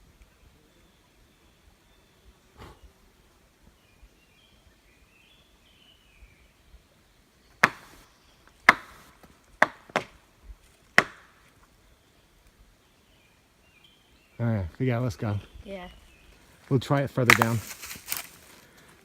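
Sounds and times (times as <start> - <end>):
faint bird chirp: 0.0 - 8.6, 11.5 - 16.5
wood knocking on tree: 7.6 - 8.0, 8.6 - 10.2, 11.0 - 11.5, 17.3 - 18.2.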